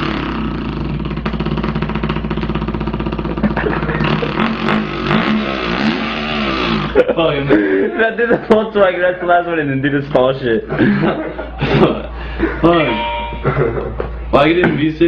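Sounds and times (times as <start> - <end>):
man imitating engine with voice: 0.0 - 8.1.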